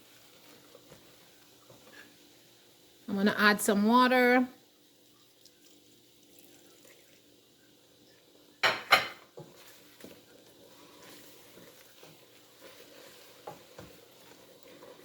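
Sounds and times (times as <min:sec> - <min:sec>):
spoon knocking against pot: 0:08.6 - 0:09.3.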